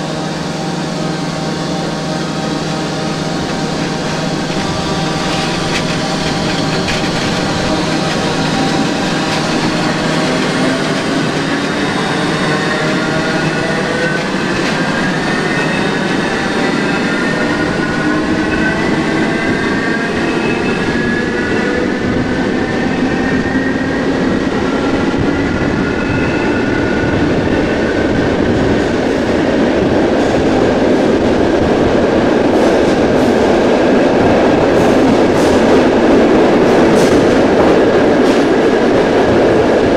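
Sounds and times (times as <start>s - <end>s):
train traction motors whining: 0.0s - 29.1s
wheels rumbling on rail: 0.0s - 39.9s.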